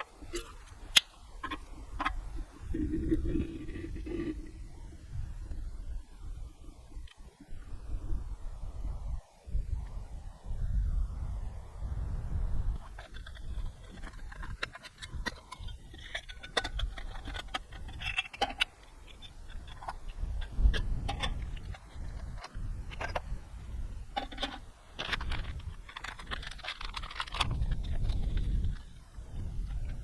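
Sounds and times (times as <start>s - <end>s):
small hard objects clicking: 24.2s - 28.9s.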